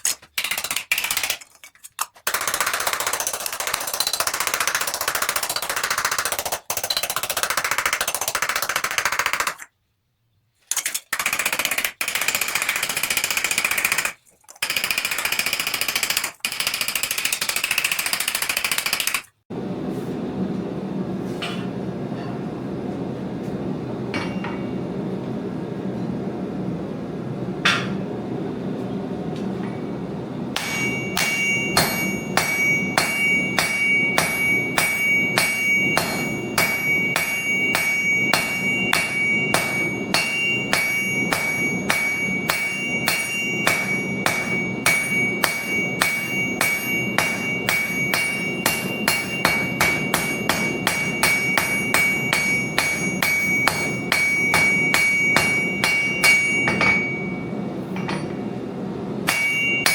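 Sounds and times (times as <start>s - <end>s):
hammer striking metal on anvil: 24.1s - 24.9s, 27.6s - 28.1s, 30.6s - 58.5s, 59.2s - 59.9s.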